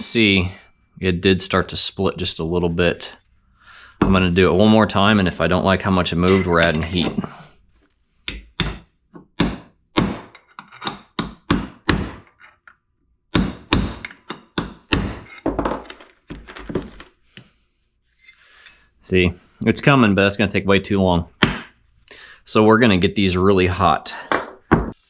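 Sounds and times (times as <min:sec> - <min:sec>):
hammer striking metal punch: 0:08.3 - 0:12.3.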